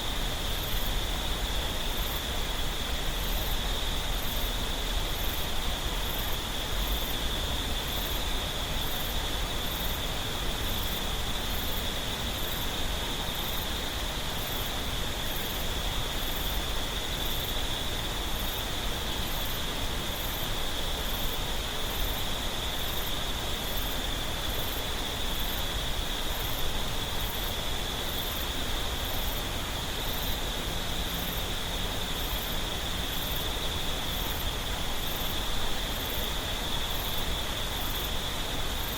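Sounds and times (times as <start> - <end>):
high insect trill: 0.0 - 38.9.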